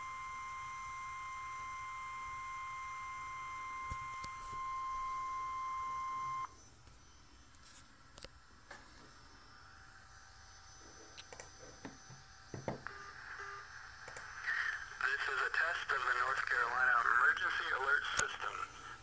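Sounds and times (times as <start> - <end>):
steady high alarm tone: 0.0 - 6.5.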